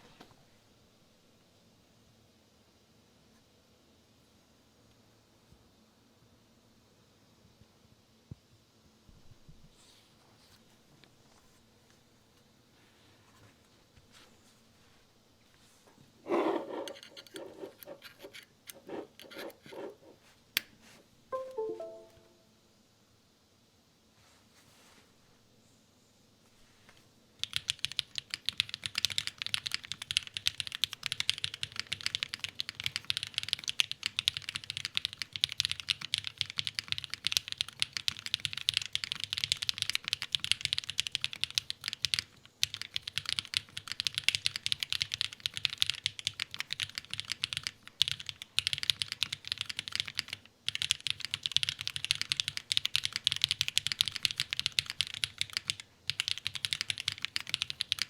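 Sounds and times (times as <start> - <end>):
mechanical keyboard typing: 16.4 - 19.9, 27.4 - 58.0.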